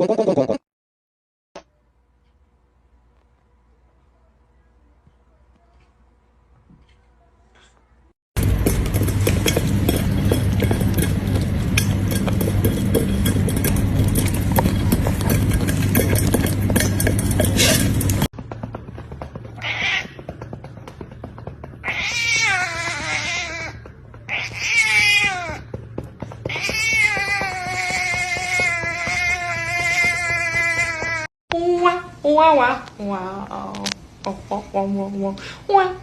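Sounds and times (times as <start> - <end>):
loud din with low hum: 1.6 - 36.0
cat meowing: 19.6 - 20.2, 21.8 - 25.6.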